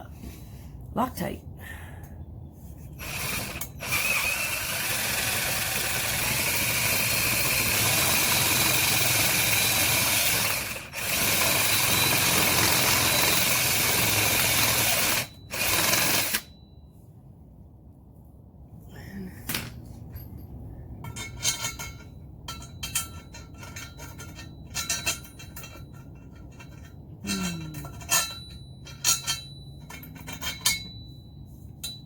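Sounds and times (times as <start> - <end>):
electric power drill running: 3.0 - 16.5.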